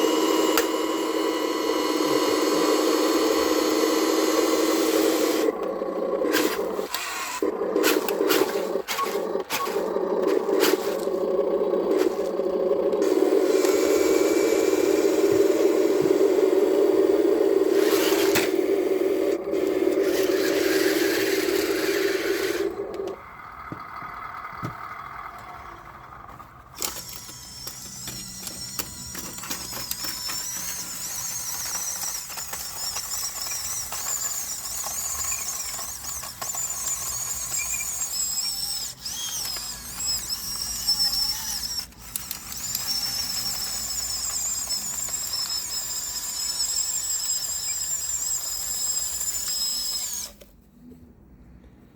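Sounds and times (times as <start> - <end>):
high electric motor whine: 0.0 - 50.4
low electric motor whine: 0.0 - 50.5.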